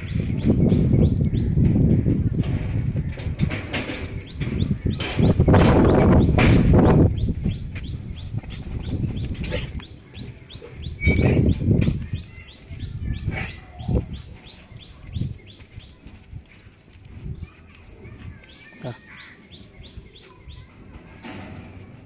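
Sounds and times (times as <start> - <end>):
low rumbling thumps: 0.0 - 9.5.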